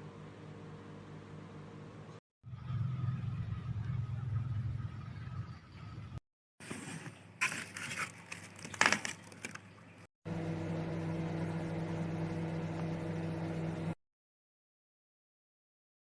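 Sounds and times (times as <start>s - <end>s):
microwave oven humming: 0.0s - 5.6s, 10.3s - 14.0s.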